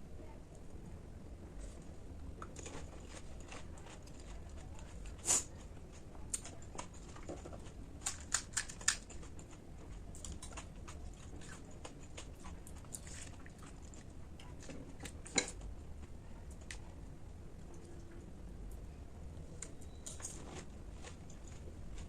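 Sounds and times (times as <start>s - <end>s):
crunchy snack being chewed: 2.5s - 14.1s.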